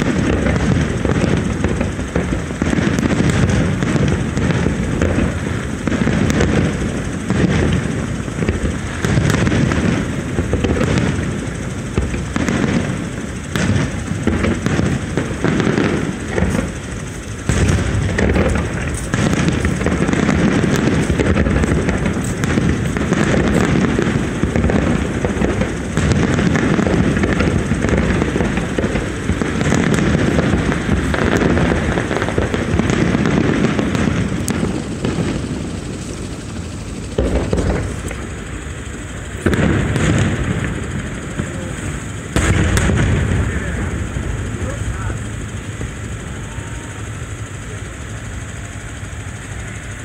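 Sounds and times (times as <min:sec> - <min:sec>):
fireworks bangs and crackles: 0:00.0 - 0:50.0.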